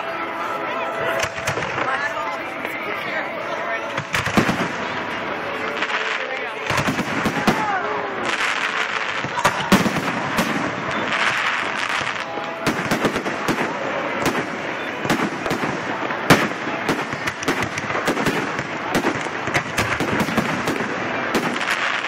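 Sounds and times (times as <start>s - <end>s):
fireworks bangs and crackling: 0.0s - 22.0s.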